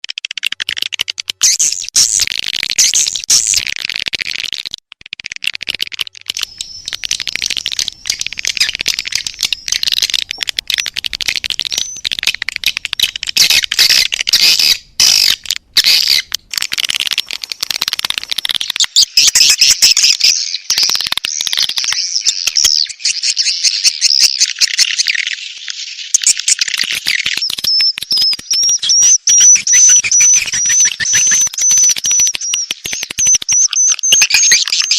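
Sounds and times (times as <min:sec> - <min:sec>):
swiftlet twittering chirps: 0:06.4 - 0:16.3, 0:25.8 - 0:34.9.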